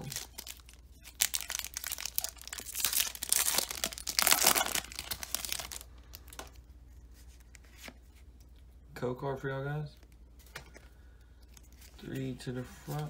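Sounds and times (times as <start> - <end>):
foil wrapper tearing and crinkling: 0.0 - 6.5.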